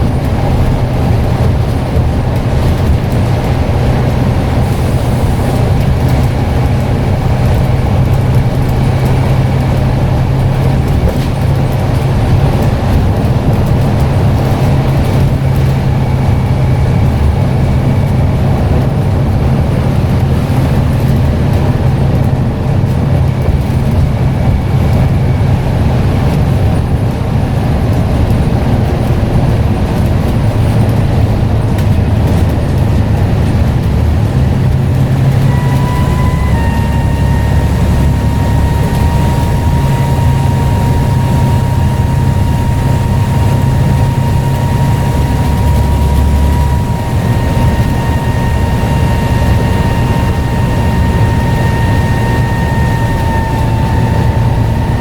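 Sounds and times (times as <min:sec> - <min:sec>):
bus engine droning: 0:00.0 - 0:55.0
road noise: 0:00.0 - 0:55.0
faint turbo whistle: 0:32.3 - 0:55.0.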